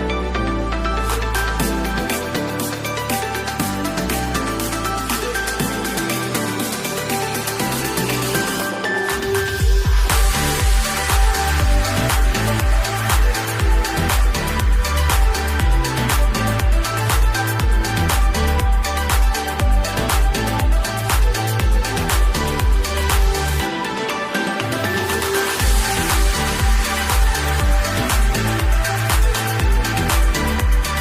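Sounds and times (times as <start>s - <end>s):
bass line: 0.0s - 31.0s
electronic dance music: 0.0s - 31.0s
kick drum: 9.6s - 23.7s, 25.6s - 31.0s.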